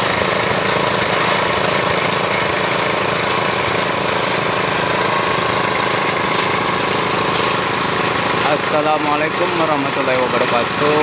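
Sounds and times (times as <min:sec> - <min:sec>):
drilling machine chatter and whine: 0:00.0 - 0:11.0.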